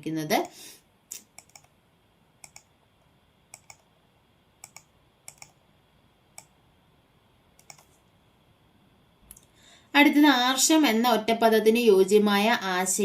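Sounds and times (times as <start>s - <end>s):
computer keyboard clicks: 1.3s - 1.7s, 2.4s - 2.7s, 3.5s - 3.8s, 4.6s - 5.6s, 7.6s - 7.9s.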